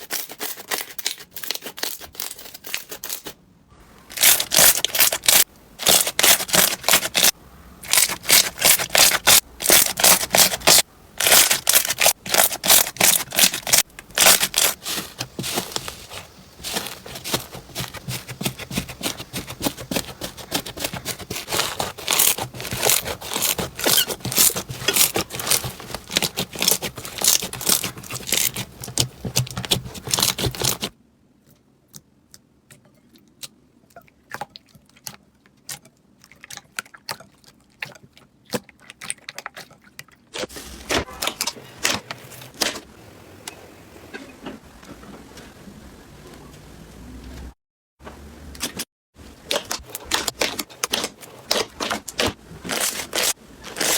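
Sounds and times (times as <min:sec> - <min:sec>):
slime squeezed crackling: 0:04.1 - 0:07.3, 0:07.9 - 0:30.9.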